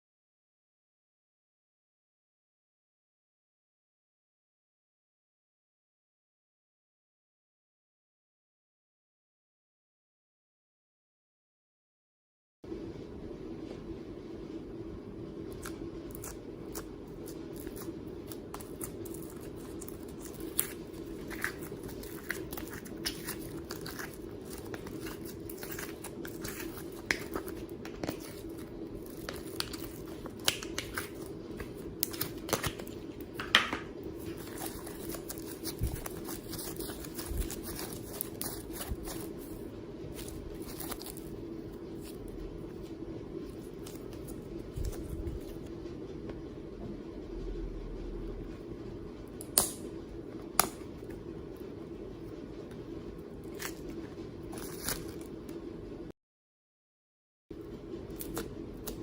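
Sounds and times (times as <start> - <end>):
steady low hum: 12.6 - 56.2, 57.5 - 59.0.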